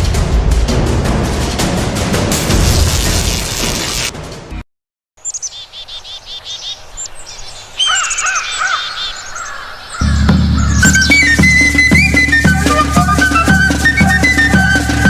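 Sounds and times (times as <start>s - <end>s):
birds chirping: 5.2s - 15.0s
music with drum and flute: 10.0s - 15.0s.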